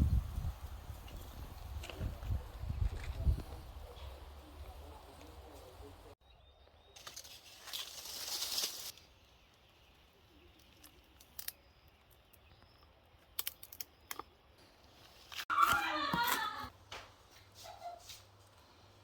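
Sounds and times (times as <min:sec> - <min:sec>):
rustling crinkling noise: 0:07.0 - 0:09.2.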